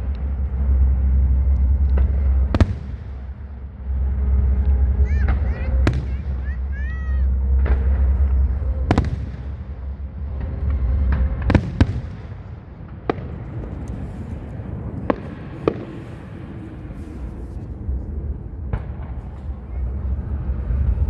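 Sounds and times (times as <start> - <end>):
low rumble: 0.0 - 21.0.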